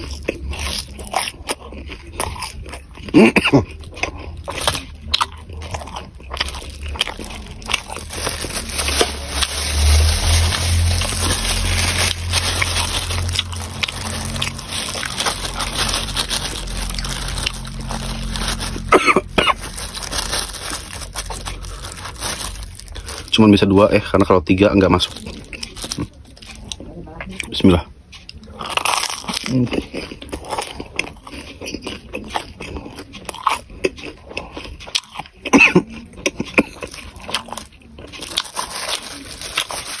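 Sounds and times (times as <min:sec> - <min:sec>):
wet chewing and slurping: 0:00.0 - 0:23.2.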